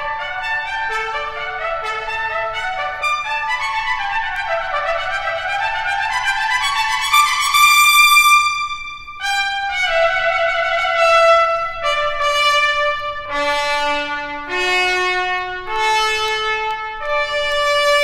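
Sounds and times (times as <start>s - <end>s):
trumpet slow melody: 0.0s - 18.0s.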